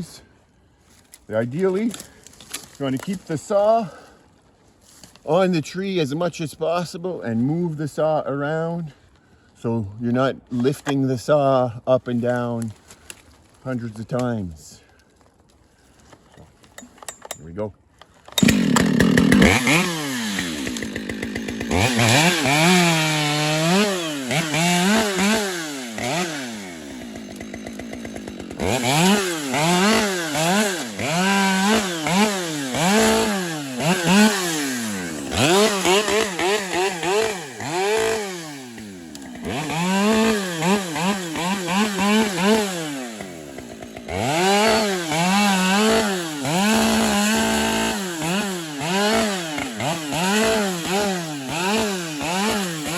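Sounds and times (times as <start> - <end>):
chainsaw revving cutting branches: 18.4 - 52.9.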